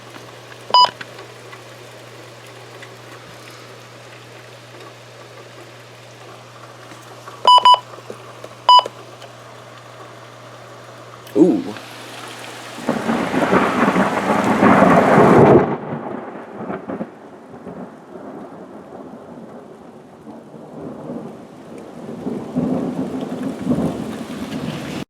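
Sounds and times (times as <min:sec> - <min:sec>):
rain: 0:00.0 - 0:25.0
rolling thunder: 0:12.6 - 0:25.0.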